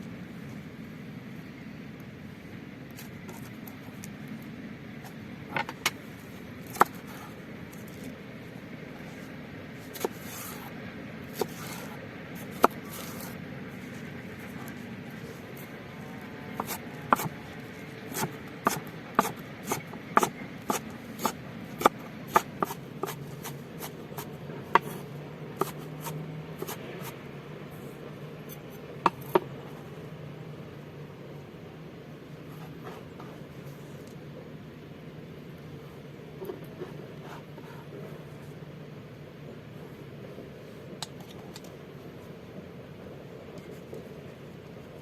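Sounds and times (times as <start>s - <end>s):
low background hum: 0.0s - 45.0s
knife chopping on cutting board: 16.6s - 17.4s, 18.1s - 24.0s, 25.6s - 26.8s.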